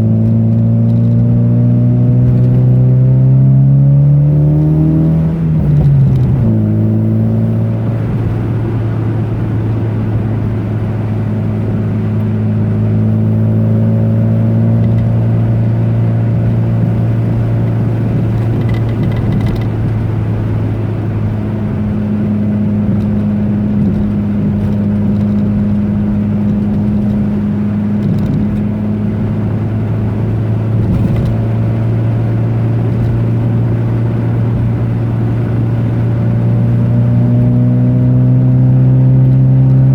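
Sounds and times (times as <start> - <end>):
car engine from inside: 0.0 - 39.9
road noise: 0.0 - 39.9
faint rattles: 18.1 - 20.2.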